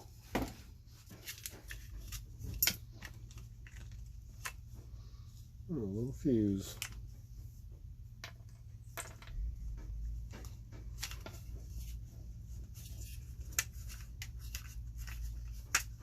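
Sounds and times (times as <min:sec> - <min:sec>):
steady low hum: 0:00.0 - 0:16.0
light clicks and taps of tools: 0:06.6 - 0:12.0.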